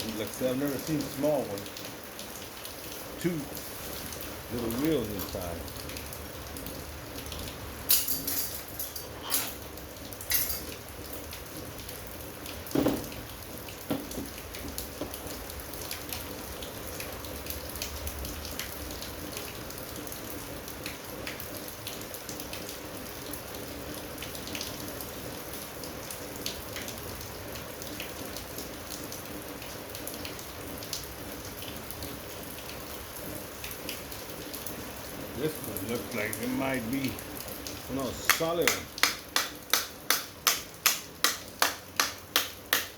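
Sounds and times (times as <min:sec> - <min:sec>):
steady hiss: 0:02.7 - 0:05.7, 0:35.2 - 0:42.9.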